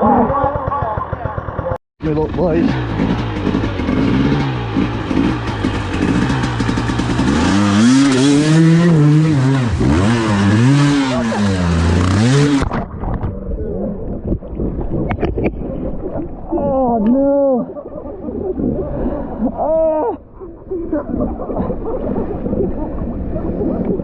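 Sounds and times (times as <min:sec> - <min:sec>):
motorcycle engine revving: 0:00.0 - 0:12.7.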